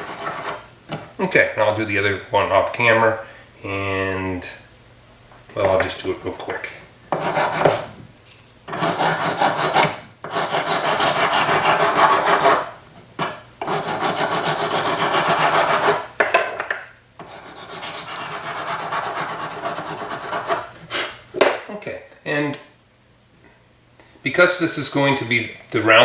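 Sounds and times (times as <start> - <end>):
sanding stick rubbing metal: 0.0 - 0.7, 7.1 - 7.9, 8.7 - 16.1, 17.2 - 21.2.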